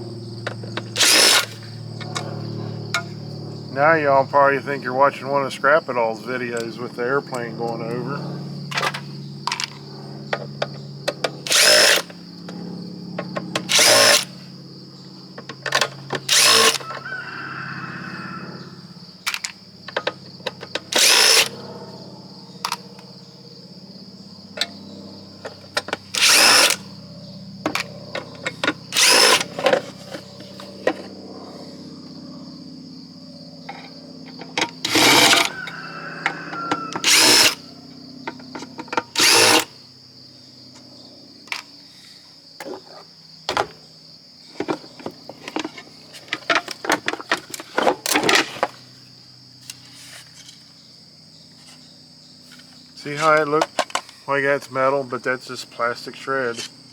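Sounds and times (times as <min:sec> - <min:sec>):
airplane drone overhead: 0:00.0 - 0:56.9
high insect chirring: 0:00.0 - 0:56.9
power drill bursts: 0:00.8 - 0:01.7, 0:11.4 - 0:12.1, 0:13.6 - 0:14.4, 0:16.0 - 0:17.0, 0:20.8 - 0:21.6, 0:25.9 - 0:26.9, 0:28.5 - 0:30.2, 0:34.6 - 0:37.7, 0:39.2 - 0:39.7
clicks of parts handled: 0:19.3 - 0:21.5, 0:53.3 - 0:54.2.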